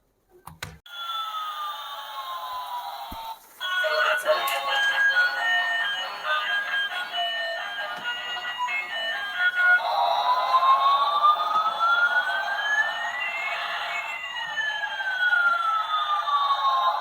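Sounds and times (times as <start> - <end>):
two-tone electronic siren: 0.9 - 17.0.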